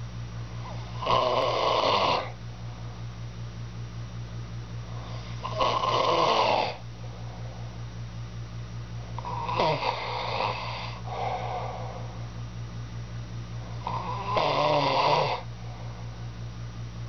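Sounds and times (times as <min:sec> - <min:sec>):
steady low hum: 0:00.0 - 0:17.0
man snoring: 0:00.6 - 0:02.4, 0:05.0 - 0:06.8, 0:09.2 - 0:12.1, 0:13.8 - 0:15.5.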